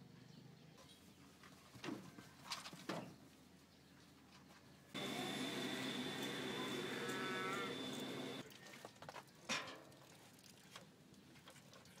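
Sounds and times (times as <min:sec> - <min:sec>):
cow mooing: 0:06.6 - 0:08.4.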